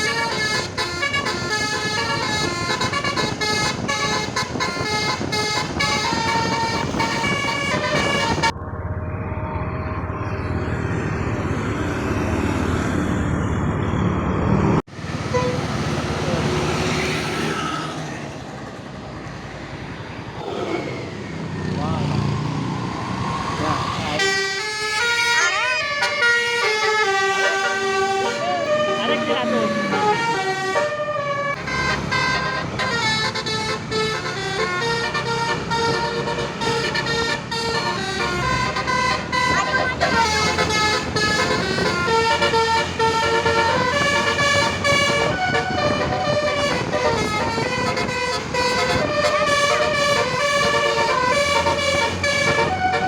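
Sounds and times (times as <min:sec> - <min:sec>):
bus engine and tyres rumbling: 0:00.0 - 0:53.0
traffic noise: 0:00.0 - 0:53.0.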